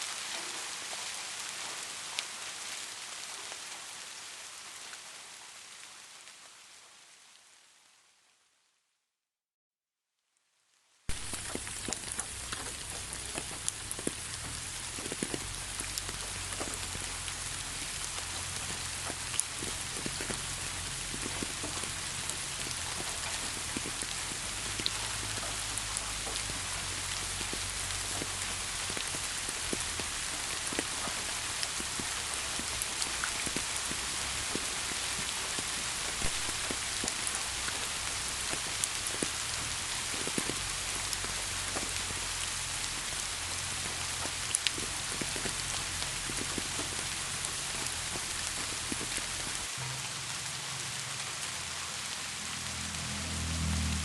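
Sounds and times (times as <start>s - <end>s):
steady rain hiss: 0.0s - 8.8s, 10.7s - 54.0s
raindrop ticks: 11.1s - 50.8s.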